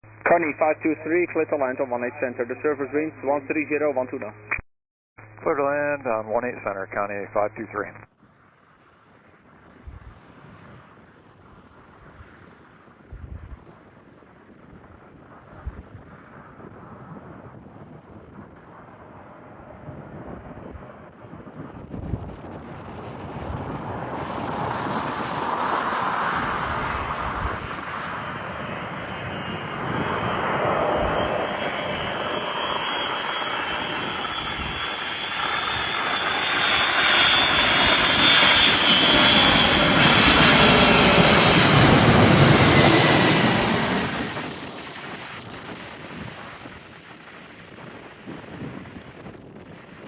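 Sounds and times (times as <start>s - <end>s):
jet engines roaring: 0.1s - 4.6s, 18.6s - 50.0s.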